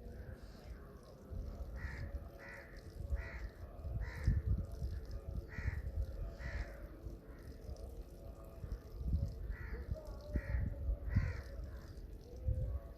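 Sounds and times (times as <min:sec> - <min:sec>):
crow cawing: 0:01.7 - 0:04.4, 0:09.5 - 0:11.9.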